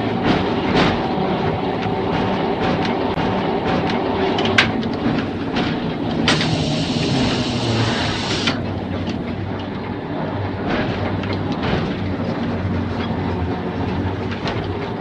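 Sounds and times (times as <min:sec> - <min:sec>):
electric tram humming: 0:00.0 - 0:15.0
wheels clicking over rails: 0:00.0 - 0:15.0
loud hiss: 0:06.3 - 0:08.6.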